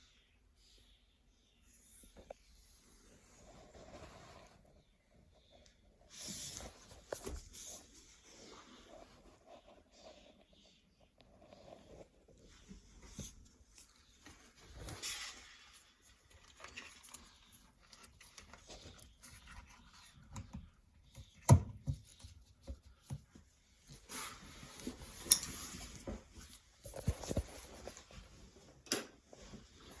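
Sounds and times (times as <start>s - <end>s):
clicks and knocks of tools: 28.8s - 29.2s.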